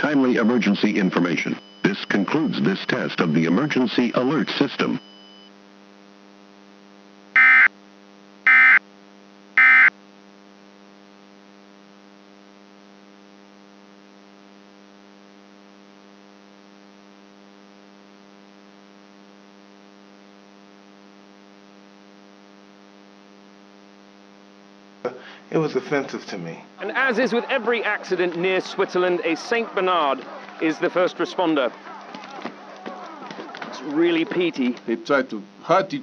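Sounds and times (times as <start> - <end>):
digital data tone bursts: 0.0 - 5.0, 7.4 - 7.7, 8.5 - 8.8, 9.6 - 9.9
steady electrical hum: 0.0 - 36.0.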